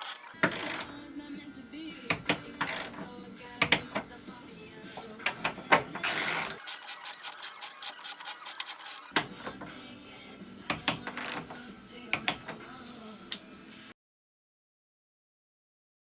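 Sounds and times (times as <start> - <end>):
ratchet wrench clicking: 6.6 - 9.1.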